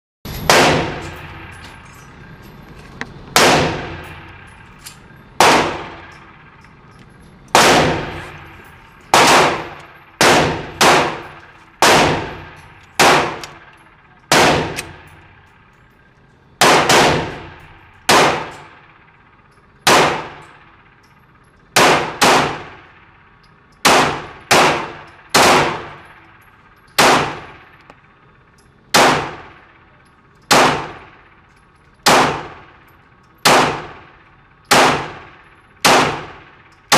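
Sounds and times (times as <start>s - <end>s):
pistol shots: 0.4s - 1.6s, 3.3s - 4.2s, 5.4s - 6.4s, 7.5s - 13.7s, 14.3s - 15.4s, 16.6s - 18.9s, 19.8s - 20.7s, 21.8s - 22.9s, 23.8s - 26.0s, 27.0s - 27.7s, 28.9s - 29.7s, 30.5s - 31.2s, 32.0s - 32.8s, 33.4s - 36.9s.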